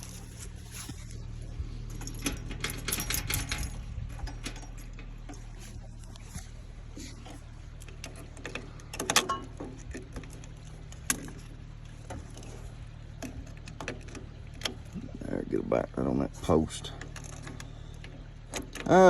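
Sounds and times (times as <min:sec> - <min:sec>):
metal tools rattling: 0:00.0 - 0:15.2, 0:16.8 - 0:19.0
steady low hum: 0:00.0 - 0:19.0
metal clamps clicking and clanking: 0:01.8 - 0:06.4, 0:07.1 - 0:15.0.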